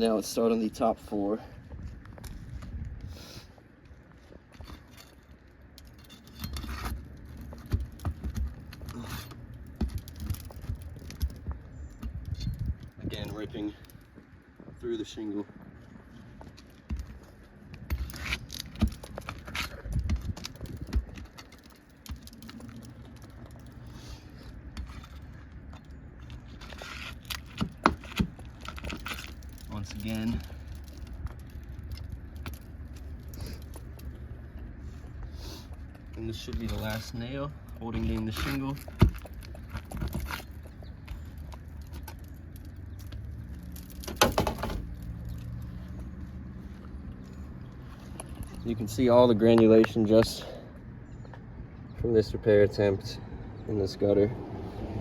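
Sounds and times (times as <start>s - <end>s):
tool scraping nail from shingle: 4.6s - 12.8s, 16.8s - 34.0s
nail tearing through shingle: 4.8s - 12.9s, 16.8s - 34.2s, 37.6s - 45.6s.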